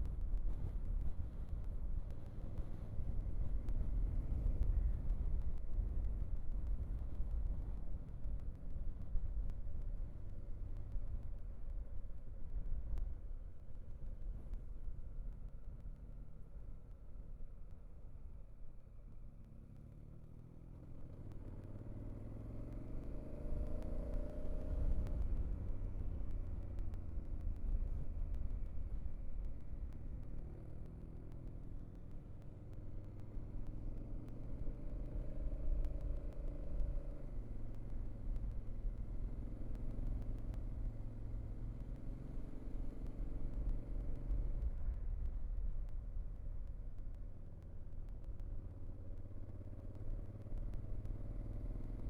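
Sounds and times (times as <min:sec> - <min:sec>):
road rumble: 0:00.0 - 0:52.0
vehicle engine speeding up: 0:21.3 - 0:28.4.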